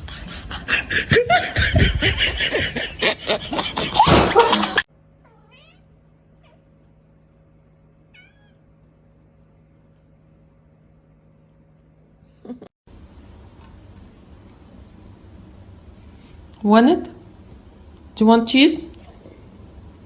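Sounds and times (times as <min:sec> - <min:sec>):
faint steady hum: 0:00.0 - 0:20.0
cat meowing: 0:05.2 - 0:06.6, 0:08.1 - 0:08.7.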